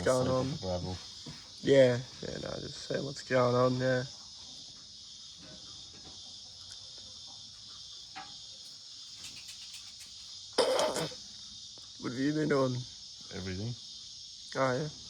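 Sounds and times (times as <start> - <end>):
crickets chirping: 0.0 - 15.0.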